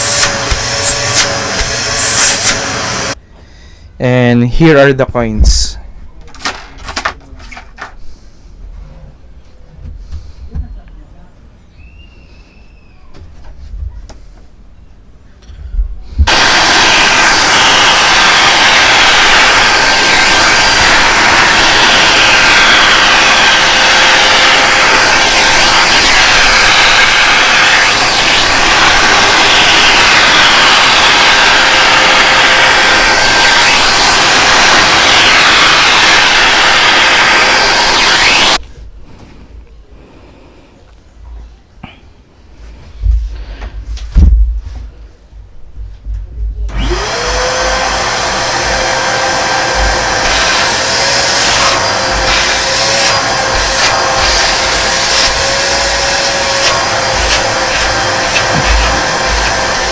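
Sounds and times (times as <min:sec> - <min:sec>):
vacuum cleaner running: 0:00.0 - 0:03.2, 0:16.2 - 0:38.6, 0:46.7 - 0:59.9.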